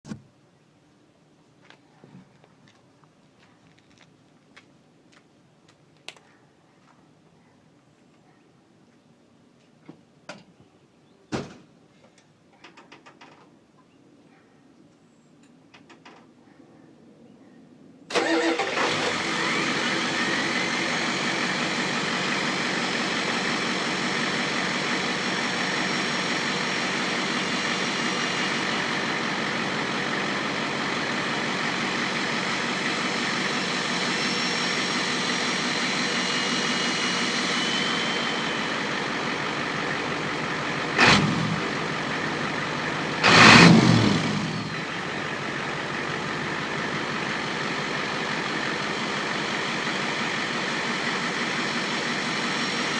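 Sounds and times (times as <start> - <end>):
diesel engine running: 18.1 - 52.9.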